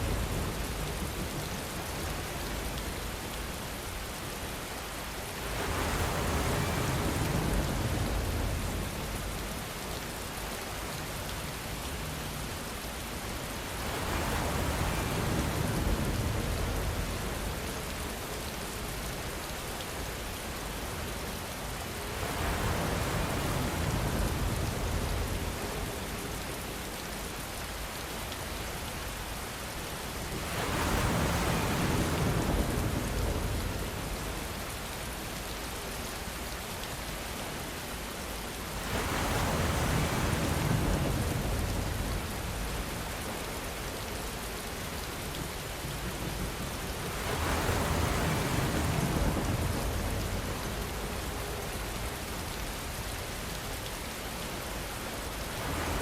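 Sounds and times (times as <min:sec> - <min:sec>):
steady rainfall: 0:00.0 - 0:56.0.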